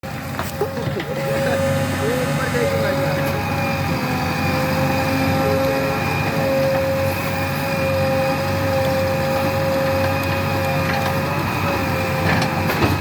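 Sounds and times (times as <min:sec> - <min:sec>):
diesel engine whining and rumbling: 0:00.0 - 0:13.0.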